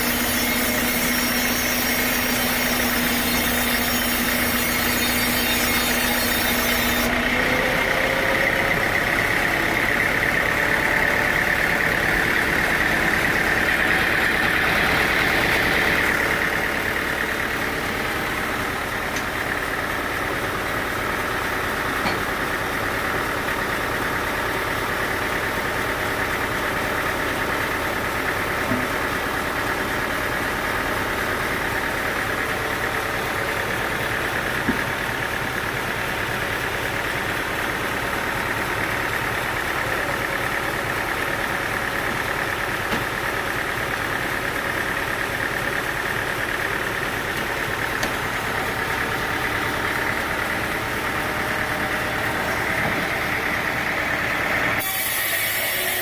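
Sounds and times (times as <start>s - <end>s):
sawmill engine running: 0.0s - 56.0s.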